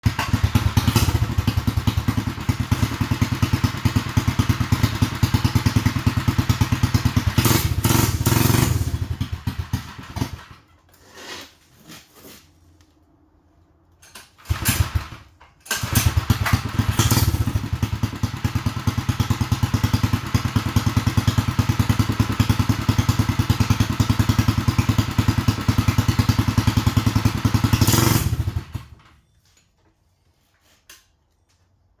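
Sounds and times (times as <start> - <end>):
motorcycle engine revving: 0.0 - 10.6, 14.5 - 29.0.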